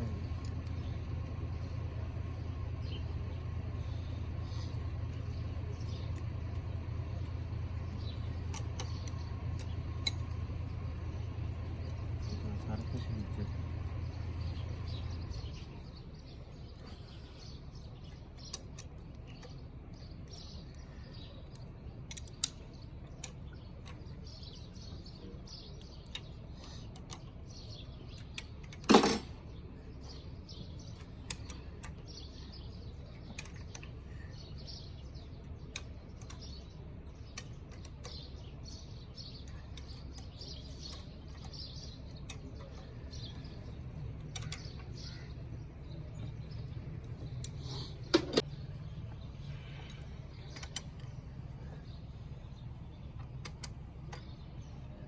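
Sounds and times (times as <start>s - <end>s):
birds chirping: 0.0s - 55.0s
steady low hum: 0.0s - 55.0s
light clicks and taps: 39.3s - 45.0s, 49.9s - 51.2s, 53.1s - 54.4s.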